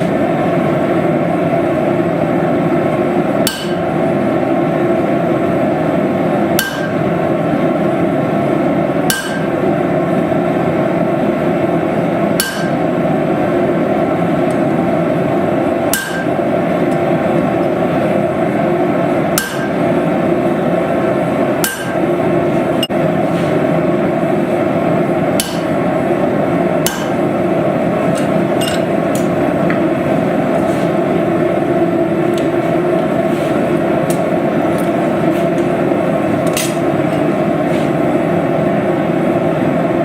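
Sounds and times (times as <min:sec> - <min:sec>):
hammering on steel: 0:03.5 - 0:03.9, 0:06.6 - 0:07.1, 0:09.1 - 0:09.6, 0:12.4 - 0:12.8, 0:15.9 - 0:16.4, 0:19.4 - 0:19.8, 0:21.6 - 0:22.1, 0:25.4 - 0:25.8, 0:26.8 - 0:27.2.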